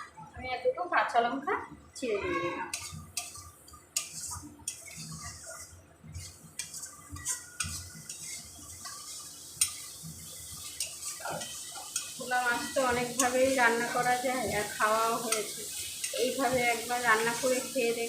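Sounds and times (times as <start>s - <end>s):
frying hiss: 0.0s - 18.0s
spatula scraping a pan: 2.4s - 18.0s.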